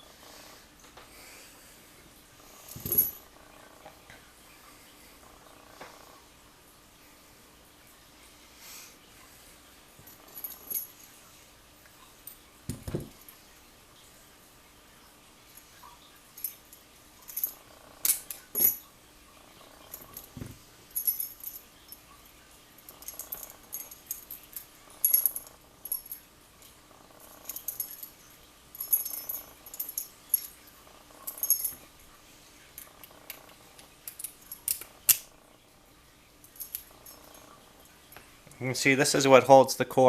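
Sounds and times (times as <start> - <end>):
keys and padlock clicking and jingling: 22.8 - 26.2, 34.0 - 35.2.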